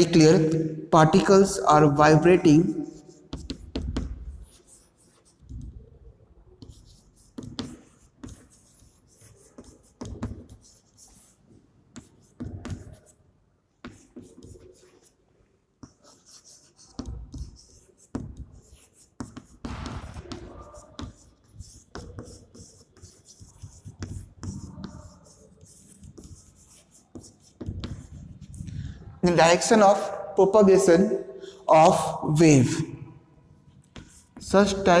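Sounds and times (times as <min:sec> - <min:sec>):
writing on a board: 0:02.8 - 0:28.8, 0:33.5 - 0:35.0.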